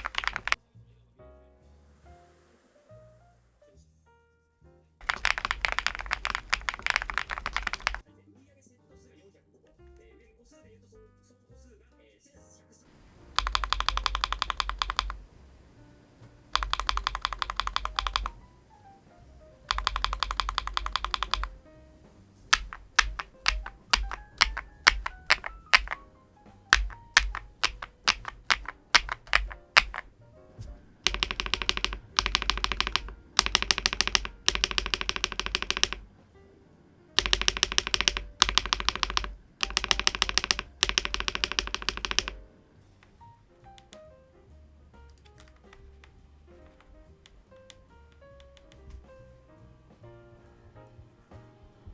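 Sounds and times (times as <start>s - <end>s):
typing on mechanical keyboard: 0.0s - 0.6s, 5.0s - 8.1s, 12.9s - 36.2s, 37.2s - 43.2s, 45.0s - 49.1s.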